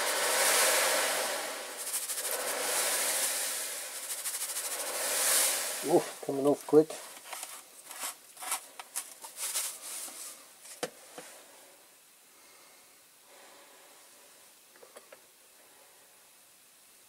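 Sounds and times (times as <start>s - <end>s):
chemical bath fizzing: 0.0s - 8.6s.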